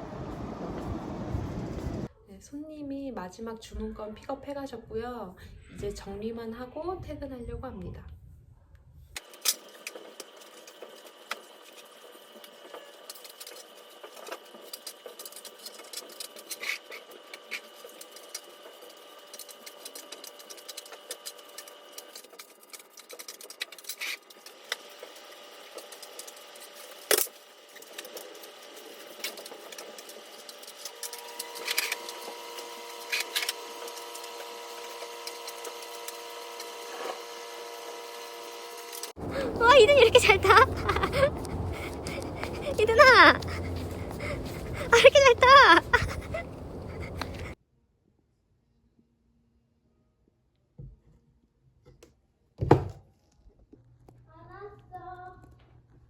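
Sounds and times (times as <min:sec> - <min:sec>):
faint steady hum: 0:39.2 - 0:47.6.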